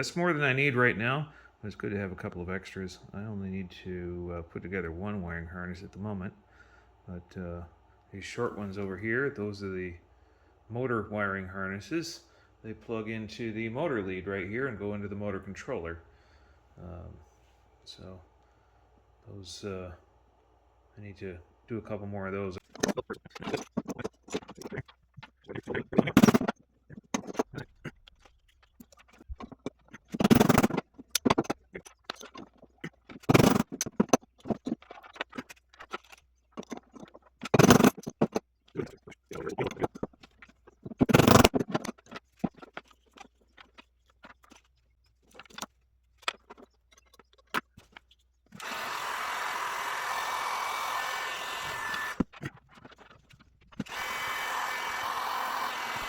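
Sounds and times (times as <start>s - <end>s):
clicks and knocks of tools: 22.6s - 38.5s
small electric tool running: 37.6s - 37.9s, 48.5s - 52.3s, 53.8s - 56.0s.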